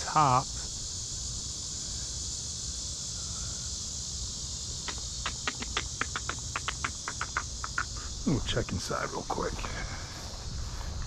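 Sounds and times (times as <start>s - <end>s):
insects droning: 0.0s - 11.0s
short sharp clicks: 4.8s - 7.8s.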